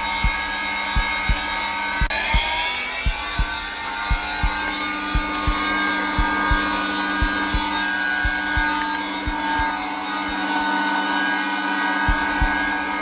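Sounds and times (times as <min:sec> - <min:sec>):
heartbeat: 0:00.0 - 0:10.7, 0:12.0 - 0:13.0
vacuum cleaner running: 0:00.0 - 0:13.0.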